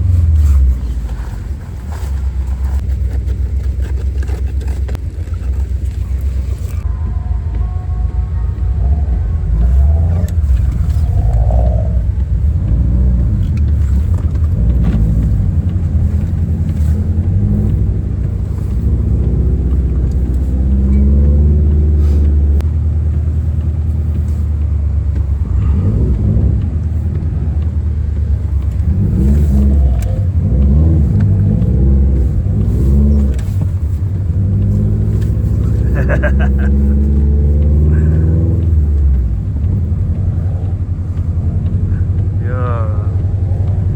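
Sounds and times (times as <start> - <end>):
car engine revving while driving: 0.0 - 43.9.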